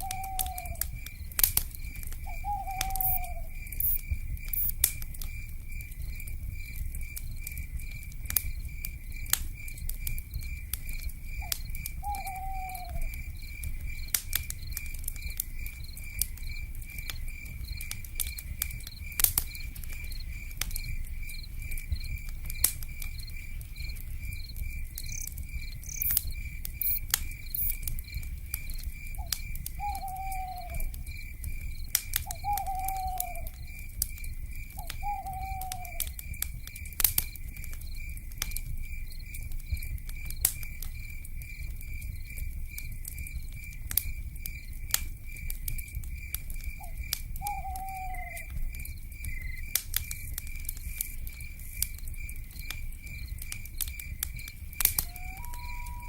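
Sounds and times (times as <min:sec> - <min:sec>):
owl call: 0:00.0 - 0:00.8, 0:02.3 - 0:03.6, 0:12.0 - 0:13.1, 0:29.2 - 0:30.9, 0:32.3 - 0:33.5, 0:34.9 - 0:36.0, 0:47.4 - 0:48.5, 0:55.0 - 0:56.0
fire crackling and popping: 0:00.0 - 0:56.0
insect trill: 0:00.0 - 0:56.0.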